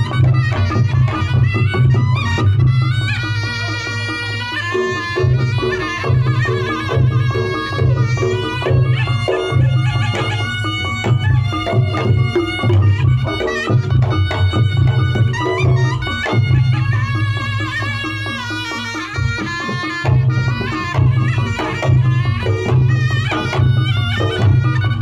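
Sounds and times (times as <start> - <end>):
hand drums: 0.0 - 25.0
reed trumpet melody: 0.0 - 25.0
heavy low beats: 4.7 - 18.3.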